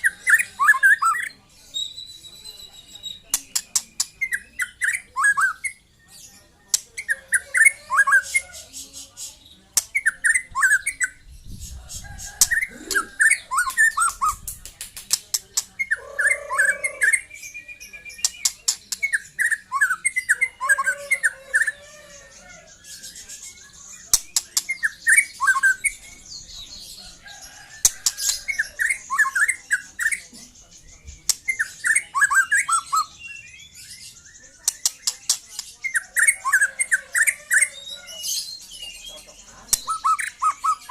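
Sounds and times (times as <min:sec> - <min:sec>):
sharp bird clicks: 0:03.4 - 0:04.4, 0:13.6 - 0:15.9, 0:24.1 - 0:24.9.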